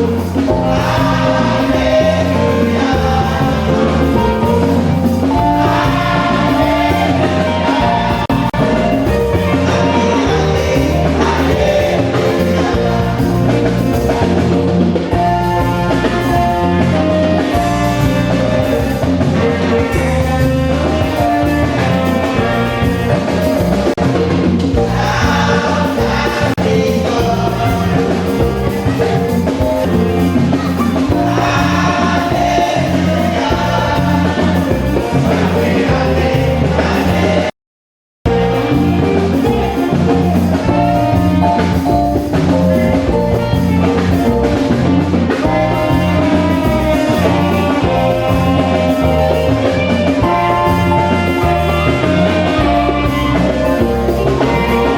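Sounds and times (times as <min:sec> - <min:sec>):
person singing: 0:00.0 - 0:23.8, 0:24.8 - 0:37.5
drums: 0:00.0 - 0:37.5, 0:38.2 - 0:54.9
gospel music: 0:00.0 - 0:37.6, 0:38.3 - 0:54.9.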